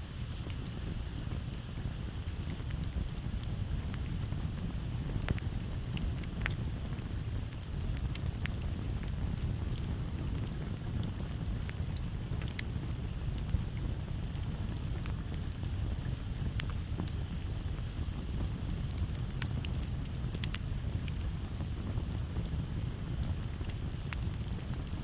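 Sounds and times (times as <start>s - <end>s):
campfire crackling: 0.0s - 25.0s
crickets trilling: 0.0s - 25.0s.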